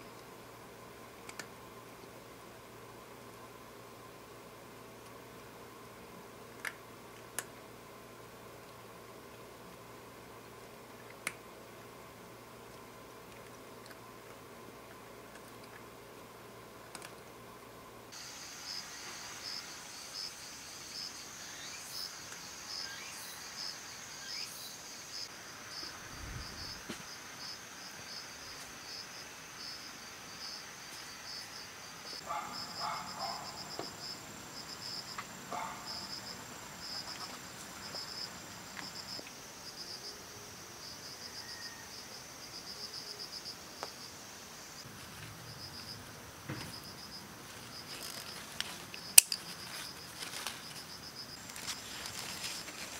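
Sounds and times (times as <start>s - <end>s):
insects chirping: 18.1s - 52.9s.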